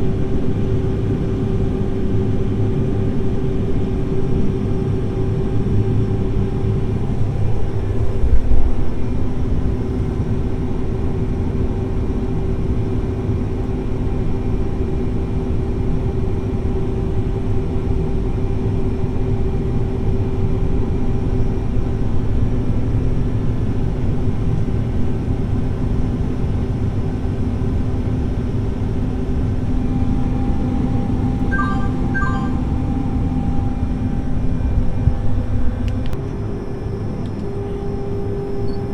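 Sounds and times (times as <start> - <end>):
short electronic beeps: 31.5 - 32.8.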